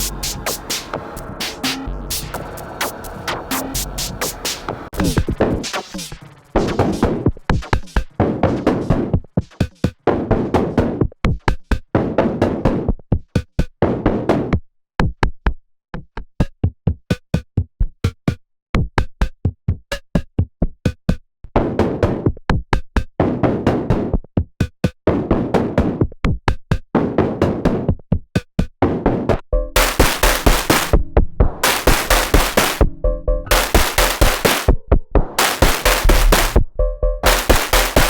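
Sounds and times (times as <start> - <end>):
synthesized drum pattern: 0.0 - 10.0, 29.4 - 38.0.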